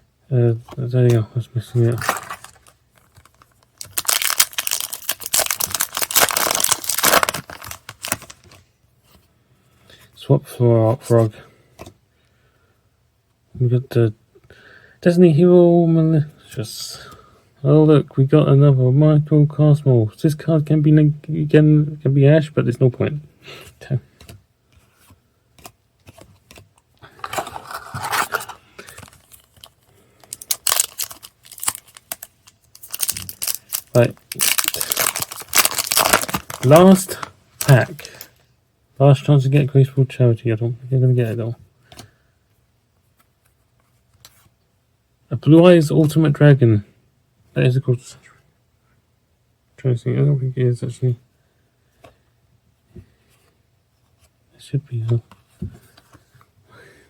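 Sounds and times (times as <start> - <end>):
foil wrapper crinkling and tearing: 1.8 - 8.6, 27.2 - 38.3
trading cards clicking and rustling: 1.8 - 8.6, 25.5 - 38.3
sharp crackles of foil wrapper: 2.1 - 8.5, 27.7 - 38.3.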